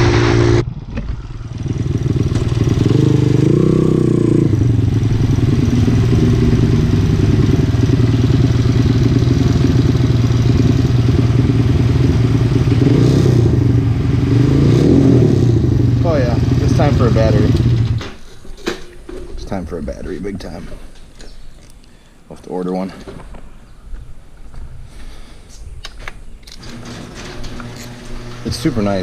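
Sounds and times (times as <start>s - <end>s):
motorbike engine revving: 0.0s - 18.2s.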